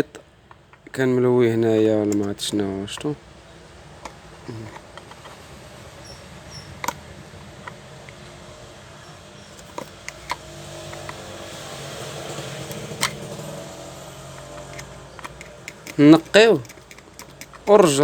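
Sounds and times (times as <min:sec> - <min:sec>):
clicks and taps of small parts: 0:09.6 - 0:11.2, 0:14.3 - 0:18.0.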